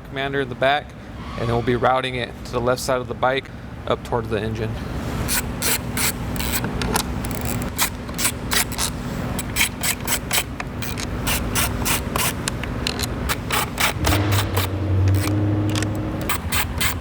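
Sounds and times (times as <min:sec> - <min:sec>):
quick irregular clicks: 0:05.3 - 0:17.0
tool scraping plastic: 0:05.3 - 0:17.0.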